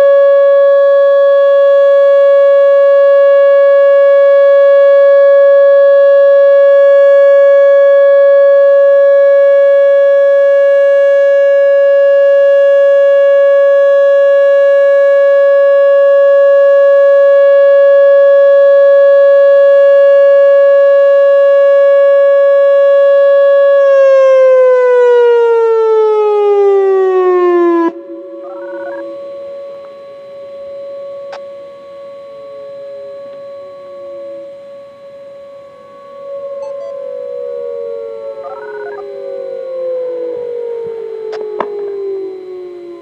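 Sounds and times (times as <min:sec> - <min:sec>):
outdoor warning siren tone: 0:00.0 - 0:43.0.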